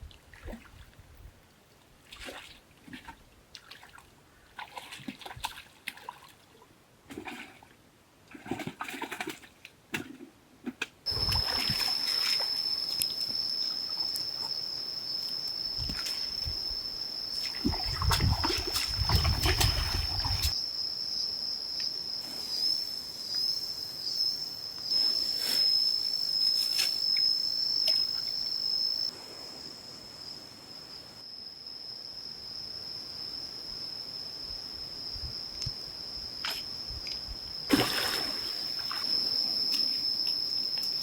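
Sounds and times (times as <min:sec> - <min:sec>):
water splashing and sloshing: 0:00.0 - 0:14.6, 0:17.3 - 0:20.6, 0:36.4 - 0:40.0.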